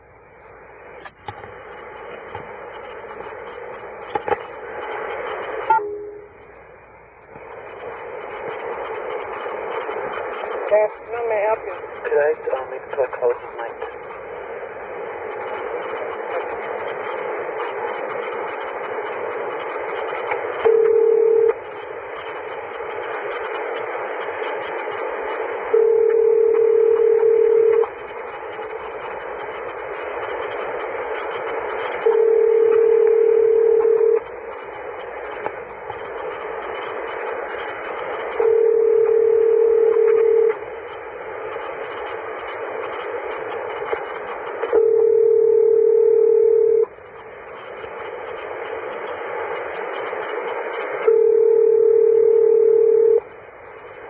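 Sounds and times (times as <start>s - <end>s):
phone line hiss: 0.0s - 6.6s, 7.3s - 54.0s
telephone ringback tone: 20.7s - 21.6s, 25.8s - 27.8s, 32.0s - 34.2s, 38.4s - 40.6s, 44.8s - 46.8s, 51.1s - 53.2s.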